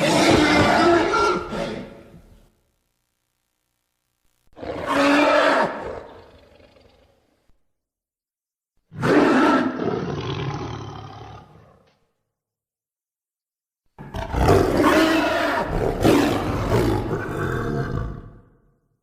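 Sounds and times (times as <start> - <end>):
monster roar: 0.0 - 2.0, 14.0 - 18.5.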